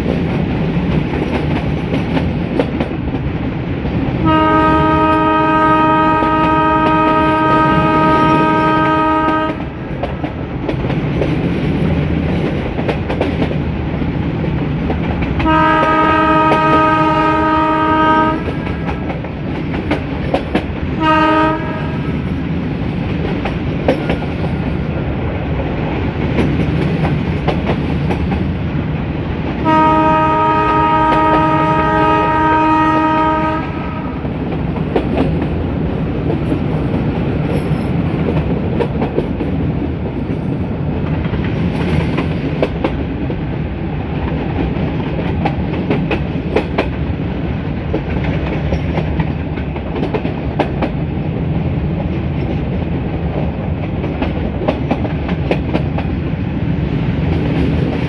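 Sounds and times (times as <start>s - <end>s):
train rumbling on jointed track: 0.0s - 58.0s
locomotive horn blast: 4.2s - 9.7s, 15.4s - 18.7s, 21.0s - 22.1s, 29.6s - 34.2s.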